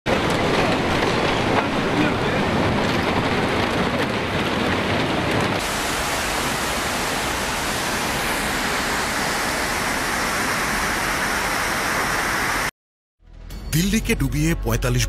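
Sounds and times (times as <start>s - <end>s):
heavy water rushing: 5.5s - 12.7s.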